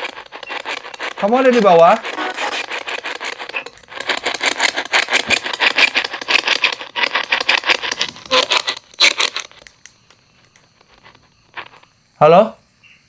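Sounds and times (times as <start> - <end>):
choppy radio static sweeping: 0.0 - 9.6.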